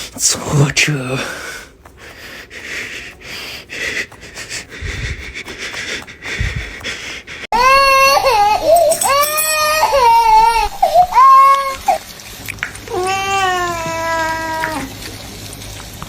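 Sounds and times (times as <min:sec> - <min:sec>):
high wailing cry: 0:07.6 - 0:11.9.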